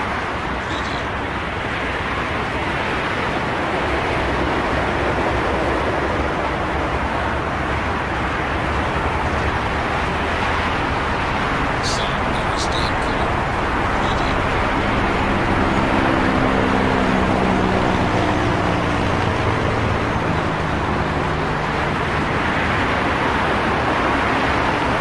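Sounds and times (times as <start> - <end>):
highway traffic rushing: 0.0 - 25.0.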